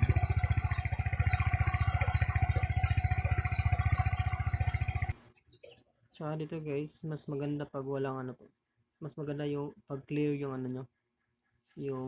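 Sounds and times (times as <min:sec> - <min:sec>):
scooter engine idling: 0:00.0 - 0:05.3.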